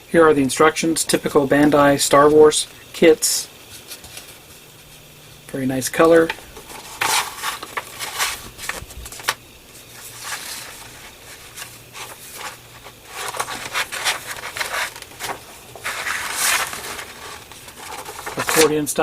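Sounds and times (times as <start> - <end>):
paper rustling: 6.0 - 18.9.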